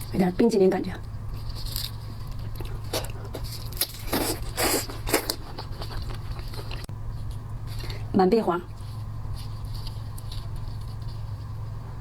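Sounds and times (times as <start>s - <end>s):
steady low hum: 0.0s - 12.0s
wet chewing: 1.1s - 8.1s.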